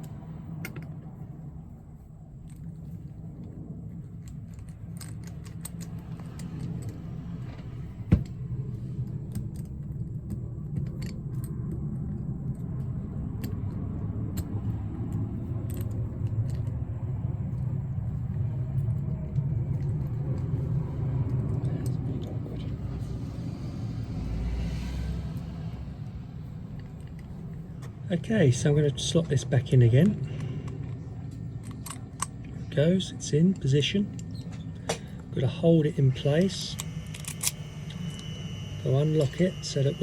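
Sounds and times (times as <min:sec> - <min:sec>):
steady low rumble: 0:00.0 - 0:40.0
padlock parts clicking: 0:04.2 - 0:08.4, 0:09.0 - 0:16.8, 0:29.3 - 0:32.5, 0:36.4 - 0:38.6.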